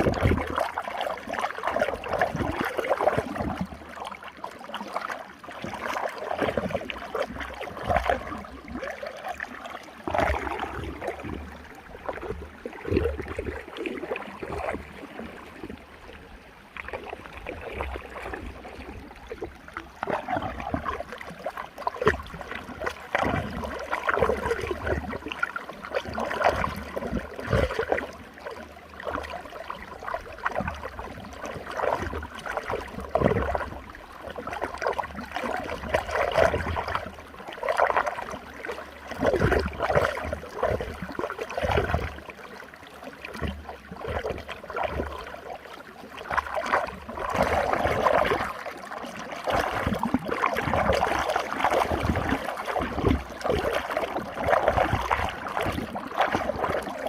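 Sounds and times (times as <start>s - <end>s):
water rushing in a whirlpool: 0.0s - 57.0s.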